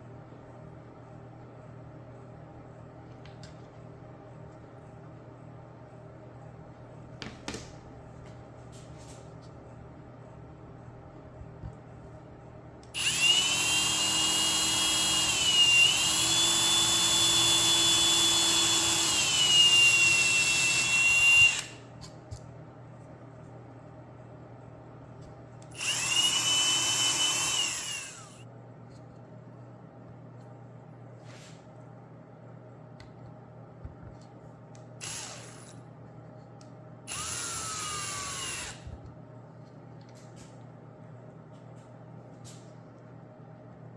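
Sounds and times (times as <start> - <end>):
electric drill whining: 12.9 - 21.8, 25.7 - 28.4, 35.0 - 35.8, 37.1 - 39.0.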